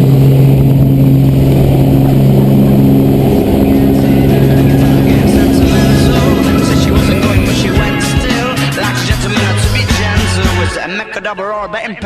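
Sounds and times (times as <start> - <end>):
light aircraft engine drone: 0.0 - 10.7
music with a beat: 4.7 - 10.8.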